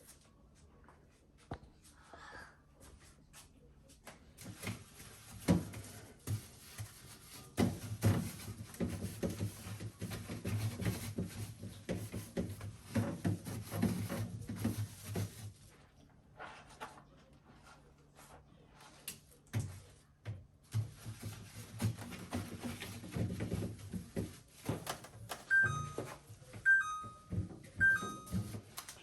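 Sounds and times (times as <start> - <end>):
scrubbing inside a fridge: 4.4 - 20.0, 20.6 - 26.8
plastic shelves clattering: 20.8 - 26.2.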